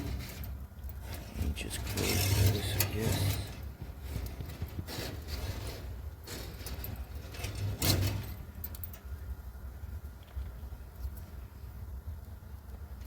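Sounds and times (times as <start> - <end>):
metal door clanking: 6.6 - 8.5.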